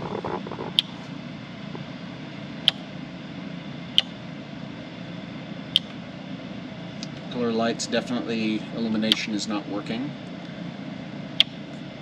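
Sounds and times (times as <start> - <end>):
steady low hum: 0.0 - 12.0
rocker switch clicks: 5.7 - 6.0, 11.4 - 11.6.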